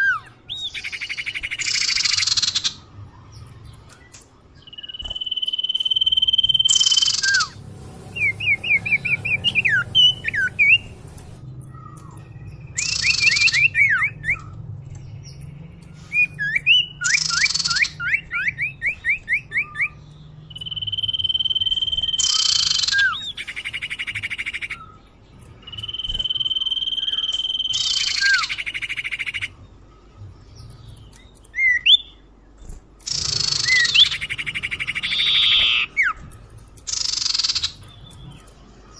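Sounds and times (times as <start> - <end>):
bird rising chip notes: 4.7 - 14.6, 33.1 - 36.2
bird harsh chattering: 33.1 - 36.2
bird whistled notes: 33.1 - 36.2.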